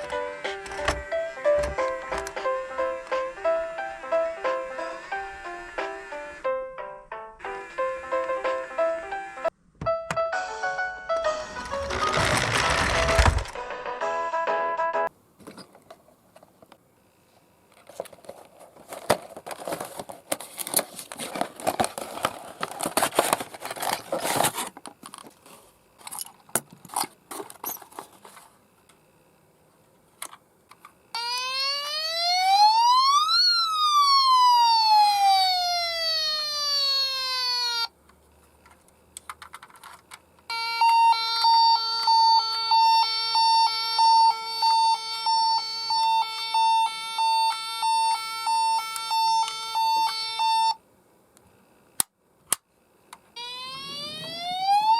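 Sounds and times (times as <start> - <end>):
crackling handling noise: 0.0 - 3.2, 11.2 - 13.7, 15.4 - 29.1, 29.7 - 31.4, 37.9 - 42.1
toy electronic siren: 2.2 - 6.4, 7.4 - 9.5, 31.2 - 37.9, 40.5 - 50.8, 53.4 - 54.9.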